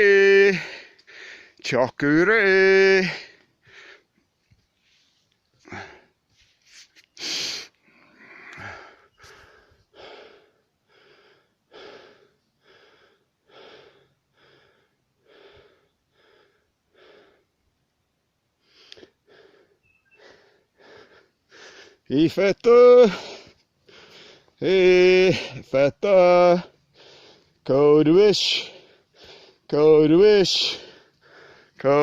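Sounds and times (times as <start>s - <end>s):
person breathing: 0.6s - 1.6s, 3.1s - 17.5s, 18.6s - 22.1s, 23.2s - 24.6s, 26.8s - 27.6s, 28.6s - 29.7s, 30.7s - 31.8s.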